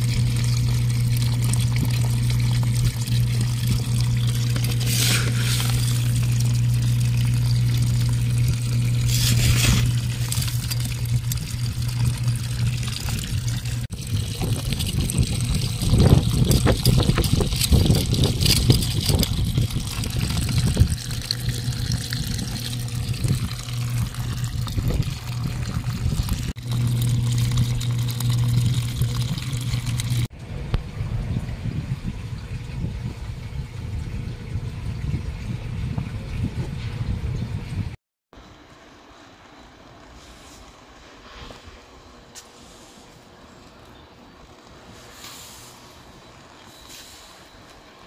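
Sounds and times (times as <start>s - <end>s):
water pouring and trickling: 0.0s - 37.9s
steady low hum: 0.0s - 48.0s.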